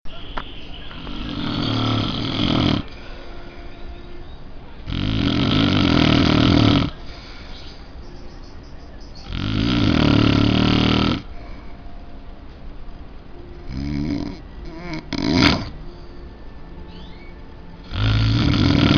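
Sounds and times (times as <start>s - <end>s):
quiet breathing: 0.9s - 8.5s, 10.2s - 18.8s
person snoring heavily: 1.0s - 3.4s, 4.9s - 7.6s, 9.3s - 11.4s, 13.6s - 15.8s, 17.8s - 18.9s.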